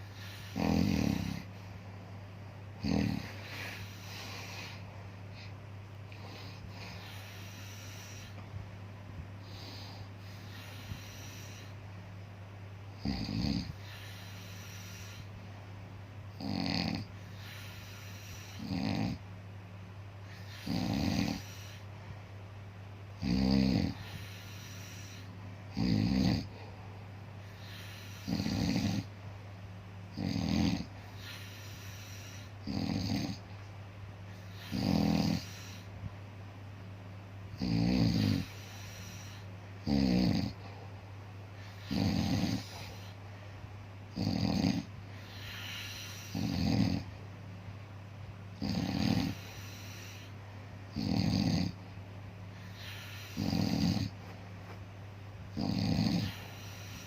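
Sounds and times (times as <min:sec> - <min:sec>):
rattling snores: 0:00.0 - 0:01.5, 0:02.8 - 0:04.8, 0:06.1 - 0:08.4, 0:09.4 - 0:11.8, 0:13.0 - 0:15.3, 0:16.4 - 0:19.2, 0:20.4 - 0:21.8, 0:23.2 - 0:26.5, 0:27.5 - 0:29.1, 0:30.1 - 0:33.4, 0:34.4 - 0:35.9, 0:37.6 - 0:40.6, 0:41.6 - 0:43.2, 0:44.1 - 0:47.2, 0:48.6 - 0:51.8, 0:52.6 - 0:54.2, 0:55.5 - 0:57.0
steady low hum: 0:00.0 - 0:57.0.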